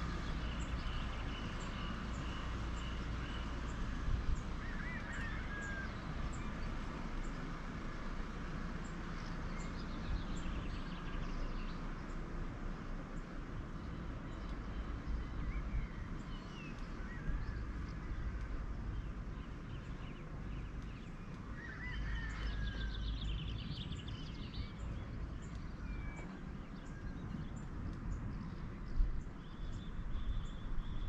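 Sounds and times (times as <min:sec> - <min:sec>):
birds chirping and trilling: 0:00.0 - 0:12.3, 0:13.1 - 0:31.0.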